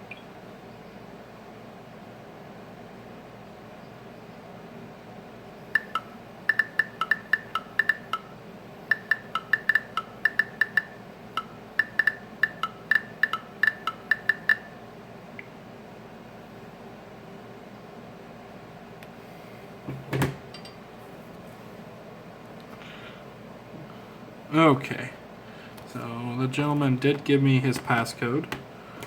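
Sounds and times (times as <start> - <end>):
electronic phone beeps: 5.8 - 8.3, 8.9 - 14.8.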